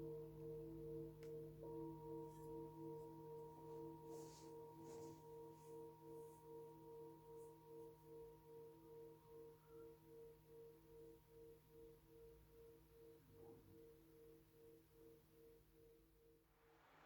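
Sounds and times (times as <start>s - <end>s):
singing bowls ringing: 0.0s - 13.1s.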